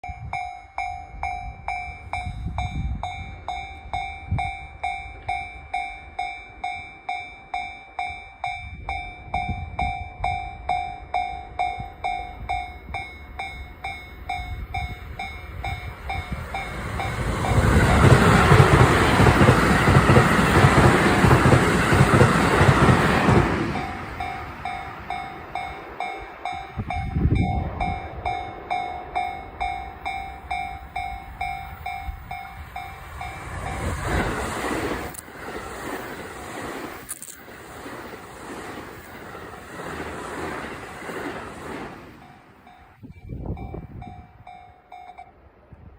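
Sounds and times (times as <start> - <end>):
train wheels clattering: 15.2 - 26.8.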